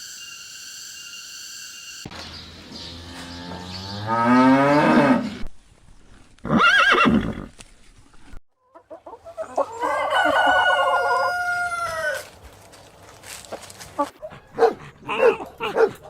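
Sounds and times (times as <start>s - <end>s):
rooster crowing: 9.7s - 12.3s.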